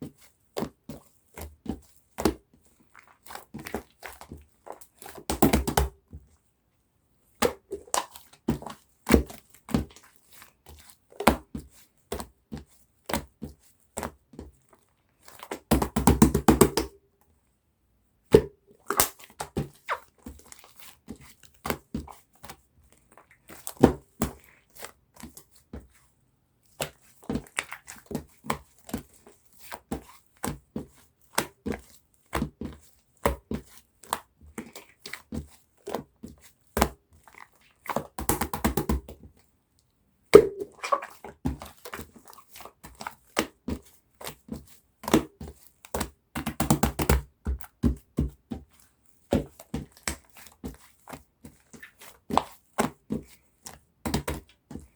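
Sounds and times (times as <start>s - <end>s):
slime squished by hand: 18.3s - 21.0s, 40.3s - 43.6s.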